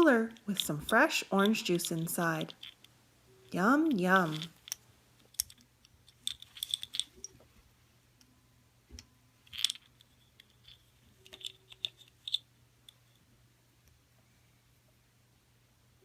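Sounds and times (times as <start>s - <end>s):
plastic toy pieces rattling: 0.0s - 2.9s, 4.0s - 7.4s, 9.4s - 12.4s.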